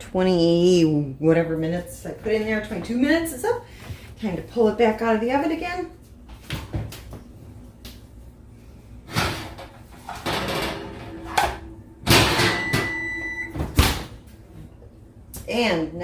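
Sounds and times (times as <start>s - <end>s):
oven tray scraping and rattling: 9.1s - 11.6s
oven door banging shut: 10.2s - 14.2s.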